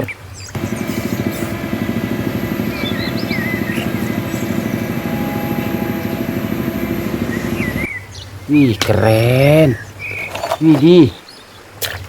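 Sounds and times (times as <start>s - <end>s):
bird chirps: 0.4s - 8.6s
small engine running: 0.6s - 7.9s.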